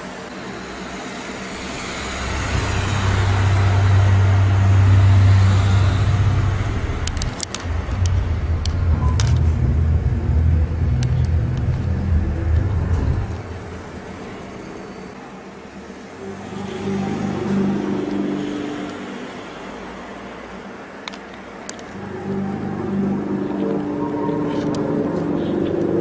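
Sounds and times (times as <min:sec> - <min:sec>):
low rumbling drone: 0:00.0 - 0:15.4, 0:16.0 - 0:20.2, 0:21.9 - 0:26.0.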